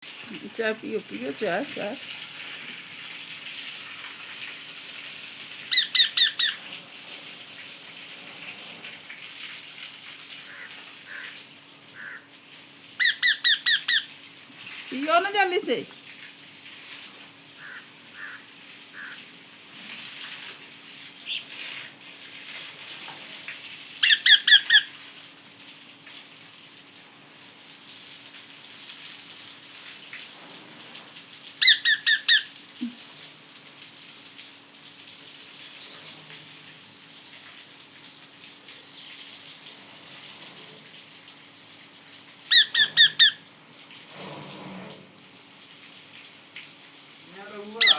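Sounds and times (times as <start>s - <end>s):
parrot shrill squeaks: 5.7s - 6.6s, 13.0s - 14.1s, 24.0s - 24.9s, 31.6s - 32.5s, 42.5s - 43.4s.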